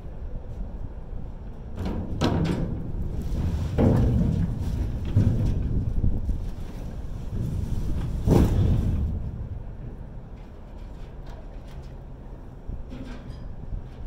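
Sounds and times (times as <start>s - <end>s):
low rumble: 2.5s - 10.8s.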